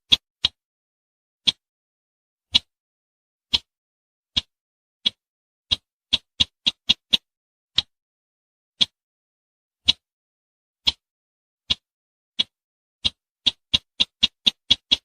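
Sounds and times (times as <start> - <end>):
bird clicking call notes: 12.4 - 15.0.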